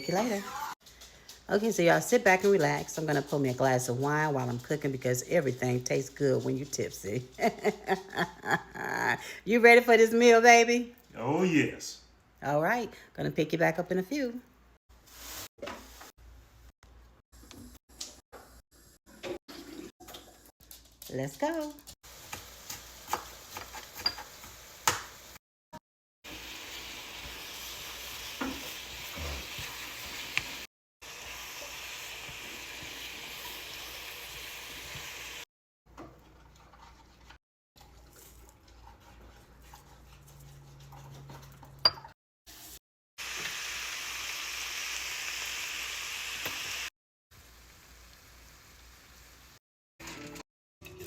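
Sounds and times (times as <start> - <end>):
food sizzling in a pan: 15.1 - 16.2, 22.0 - 25.4, 26.2 - 35.5, 42.5 - 49.6.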